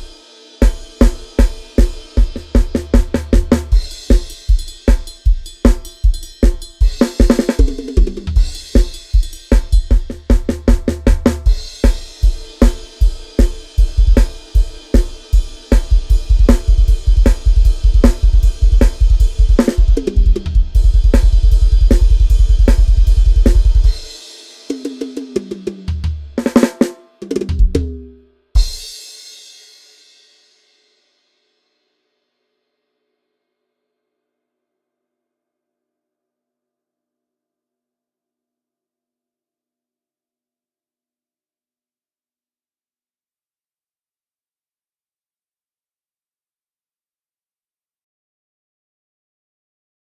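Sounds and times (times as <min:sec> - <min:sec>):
drum kit playing grooves: 0:00.0 - 0:29.5
fast double bass drum roll: 0:01.0 - 0:04.3, 0:07.0 - 0:14.4, 0:15.0 - 0:24.1, 0:25.0 - 0:28.2.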